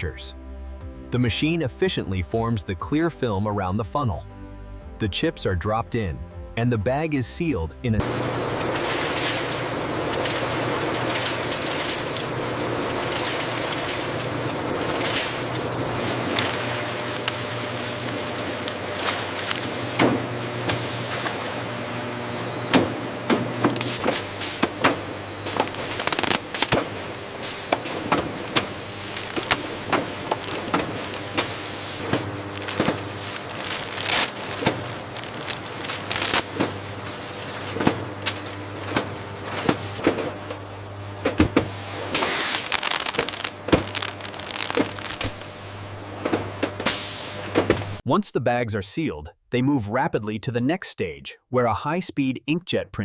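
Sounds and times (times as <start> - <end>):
machine humming: 8.0 - 48.0
sharp clicks and crackles: 25.6 - 26.8, 29.1 - 36.5, 42.5 - 45.4.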